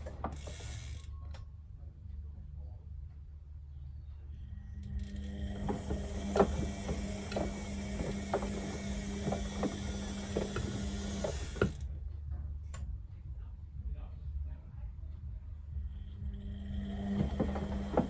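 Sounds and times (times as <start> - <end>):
washing machine motor hum: 0.0 - 1.3, 4.8 - 11.8, 15.9 - 18.0
drum clicks and knocks: 5.6 - 11.8.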